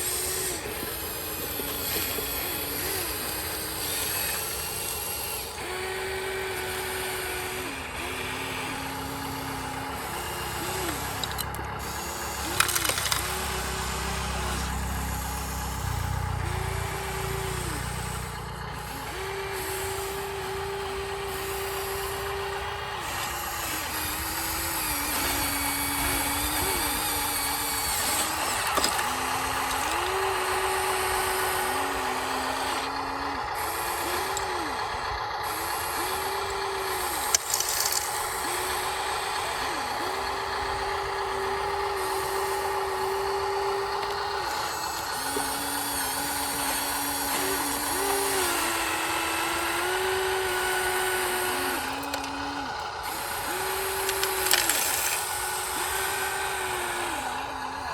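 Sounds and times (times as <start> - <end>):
small electric motors whining: 0.0 - 57.9
rough scraping: 37.1 - 38.4.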